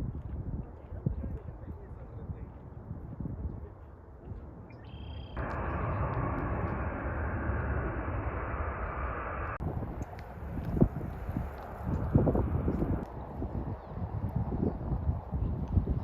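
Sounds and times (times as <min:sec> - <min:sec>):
low outdoor background rumble: 0:04.8 - 0:14.0
jet airliner engine rush: 0:05.4 - 0:13.8.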